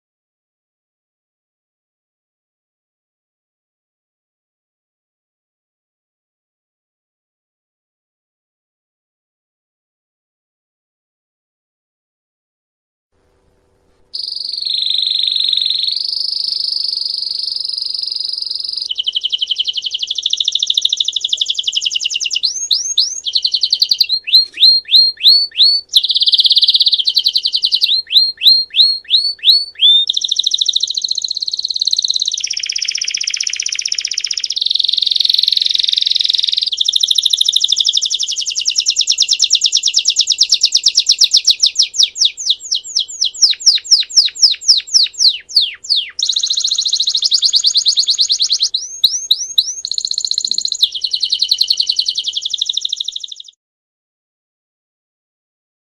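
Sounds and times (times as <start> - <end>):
canary singing trills: 14.2 - 53.6.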